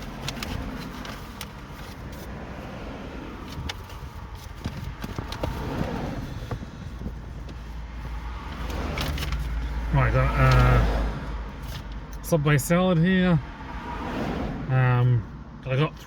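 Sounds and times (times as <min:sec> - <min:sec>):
car cabin rumble: 0:00.0 - 0:12.8.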